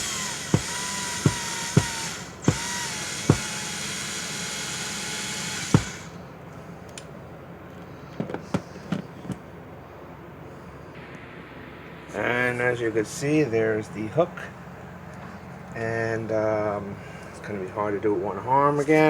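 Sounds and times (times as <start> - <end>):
sharp knocks: 0.0 - 4.0, 5.6 - 6.2
cordless drill running: 0.0 - 6.3.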